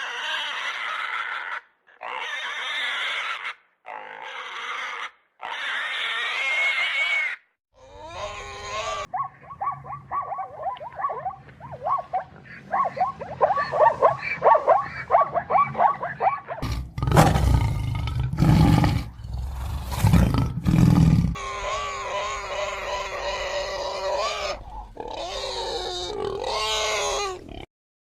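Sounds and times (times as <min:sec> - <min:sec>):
tiger roaring: 0:12.0 - 0:27.7.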